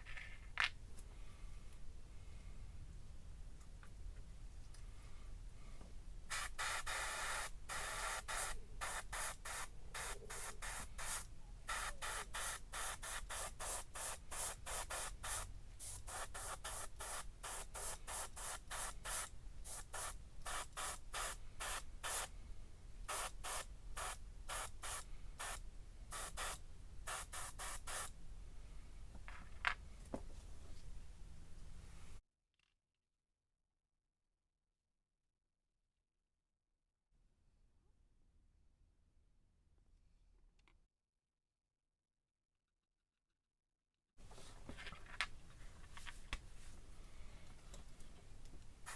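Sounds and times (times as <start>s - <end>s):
spray paint hissing bursts: 6.3s - 22.3s, 23.0s - 28.1s.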